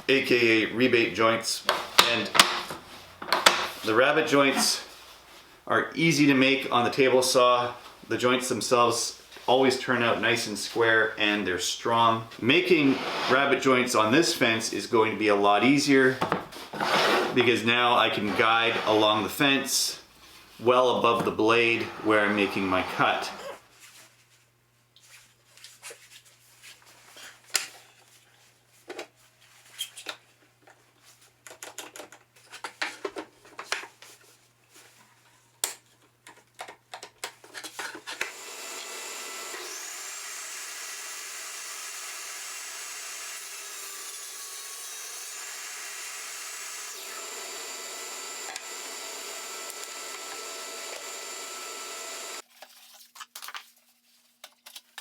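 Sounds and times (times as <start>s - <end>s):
knocks and clicks of wood handling: 1.7s - 3.8s
table saw running: 21.7s - 23.6s, 38.3s - 52.4s.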